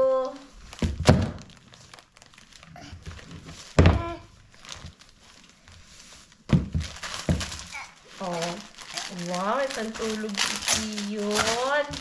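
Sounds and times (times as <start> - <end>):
gift wrapping crinkling: 0.0 - 12.0.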